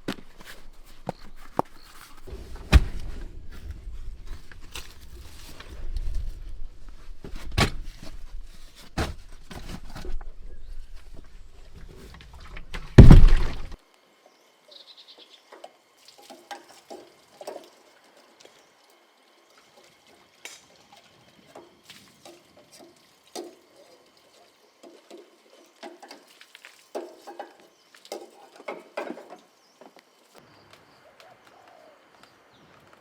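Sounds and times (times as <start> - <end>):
knocks and thumps: 2.2 - 5.0, 12.3 - 13.8
low rumble: 2.3 - 7.0.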